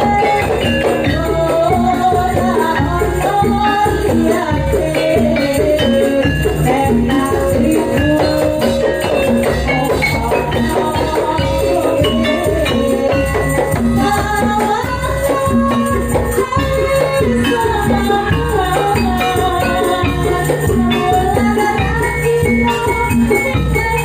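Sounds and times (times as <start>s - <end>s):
jingling percussion: 0.0s - 24.0s.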